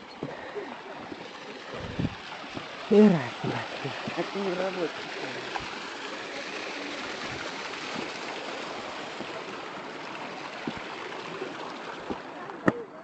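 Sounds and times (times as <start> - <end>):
rushing stream water: 0.0 - 13.0.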